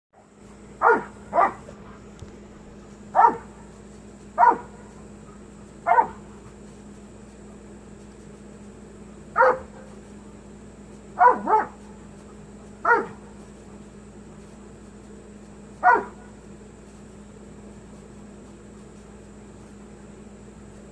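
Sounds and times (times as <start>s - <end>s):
dog barking: 0.8s - 2.0s, 3.1s - 3.6s, 4.4s - 6.4s, 9.4s - 10.0s, 11.2s - 11.8s, 12.8s - 13.3s, 15.8s - 16.3s.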